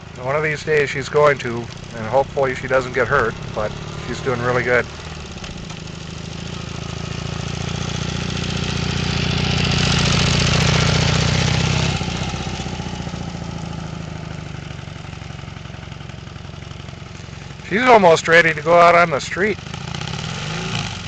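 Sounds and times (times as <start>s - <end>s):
motorcycle passing by: 0.0s - 16.8s, 17.9s - 21.0s.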